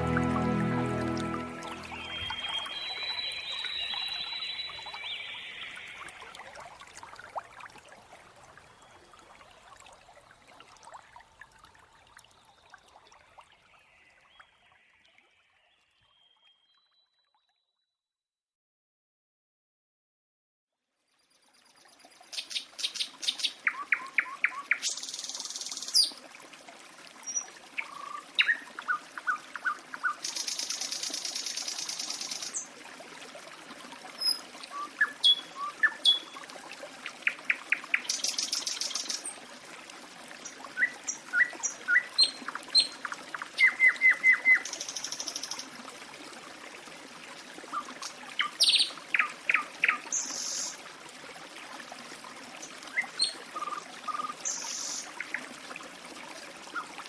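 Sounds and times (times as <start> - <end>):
running water trickling: 0.0 - 16.2, 21.1 - 57.0
songbirds chirping and trilling: 1.7 - 6.2.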